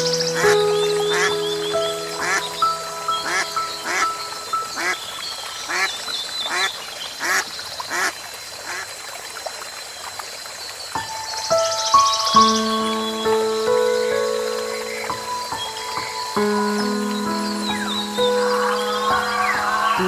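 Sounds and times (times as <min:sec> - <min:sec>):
soft background music: 0:00.0 - 0:05.1, 0:11.0 - 0:20.0.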